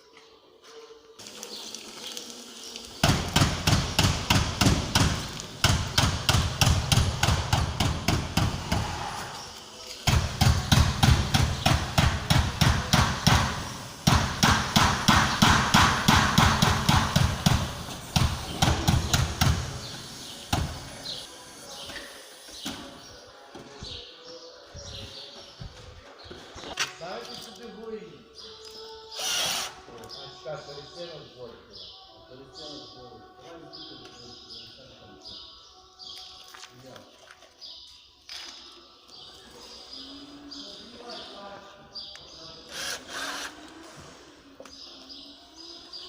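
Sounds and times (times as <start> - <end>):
rapid hammering: 3.0 - 9.0, 10.0 - 19.8.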